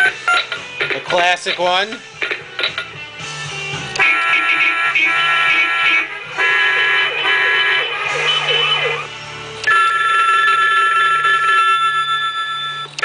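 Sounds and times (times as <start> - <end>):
pulsing multi-tone phone ring: 6.8 - 9.1, 9.7 - 12.9
warbling siren-like tone: 7.0 - 9.1.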